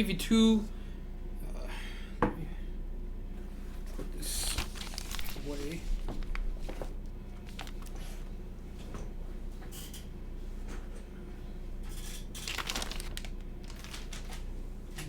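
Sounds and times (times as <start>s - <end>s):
packaging rustling and crinkling: 4.2s - 8.2s, 12.3s - 14.5s.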